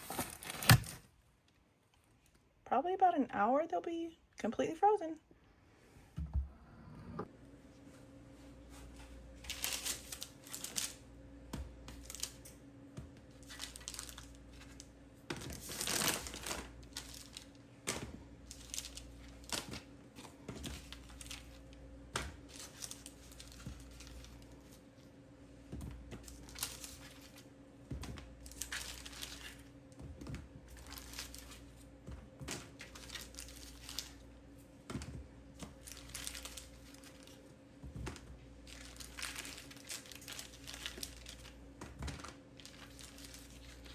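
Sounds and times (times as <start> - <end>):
plastic crinkling and rustling: 0.0 - 1.1, 8.7 - 11.0, 11.9 - 12.6, 13.2 - 21.7, 22.4 - 25.1, 25.8 - 43.9
steady low hum: 0.0 - 43.9.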